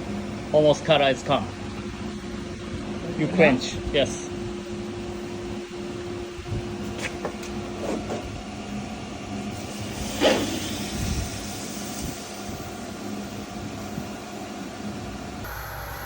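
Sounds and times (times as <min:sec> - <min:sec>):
hot blade quenching hiss: 0:09.6 - 0:12.8
machine hum: 0:14.7 - 0:16.0.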